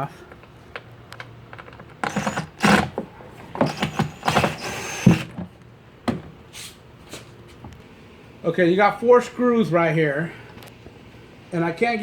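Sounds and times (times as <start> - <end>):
screwdriver scrapes and clicks: 2.0 - 2.9.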